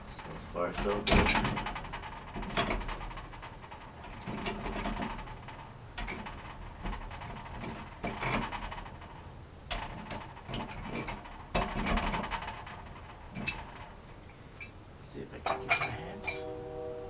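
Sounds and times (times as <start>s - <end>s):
metal scraping: 15.4s - 17.0s.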